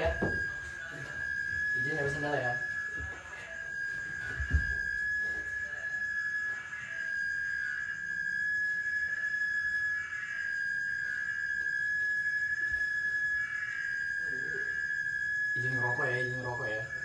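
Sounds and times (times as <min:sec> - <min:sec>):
high-pitched electronic whine: 0:00.0 - 0:17.0.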